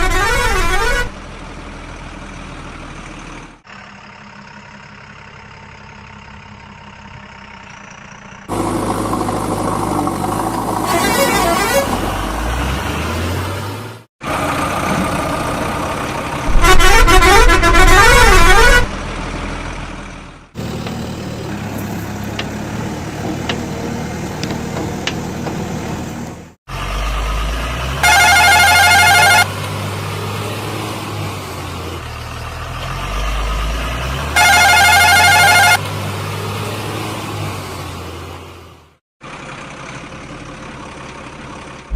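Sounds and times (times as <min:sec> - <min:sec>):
steady horn blasts: 0:00.0 - 0:01.2, 0:10.8 - 0:12.0, 0:16.4 - 0:19.0, 0:28.0 - 0:29.6, 0:34.3 - 0:35.9
warbling truck horn: 0:00.0 - 0:01.2, 0:10.8 - 0:12.1, 0:16.5 - 0:19.0, 0:27.9 - 0:29.6, 0:34.2 - 0:35.9
heavy vehicle engines droning: 0:00.0 - 0:41.9.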